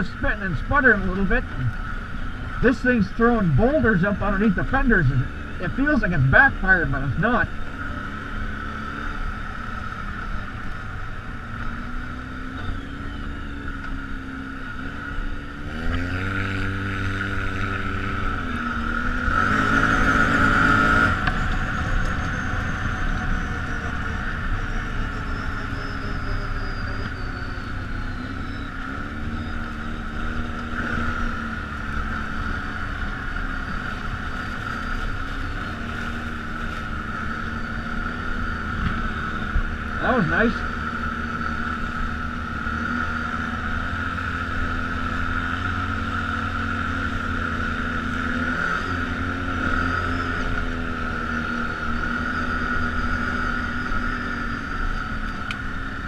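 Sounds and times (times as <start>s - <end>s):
atv engine revving: 0.0s - 56.0s.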